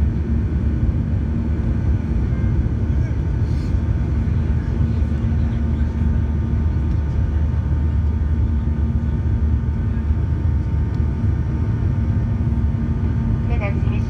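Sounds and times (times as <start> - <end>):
constant hum: 0.0 - 14.0
jet engine cabin rumble: 0.0 - 14.0.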